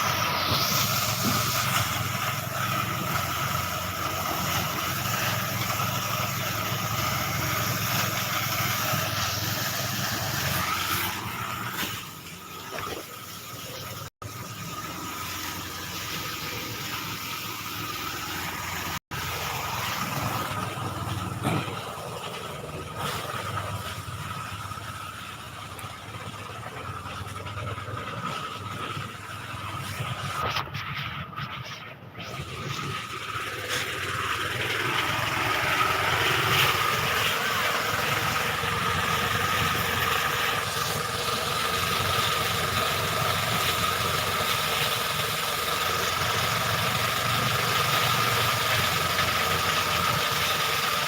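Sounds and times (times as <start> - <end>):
threshing machine whine: 0.0 - 30.6.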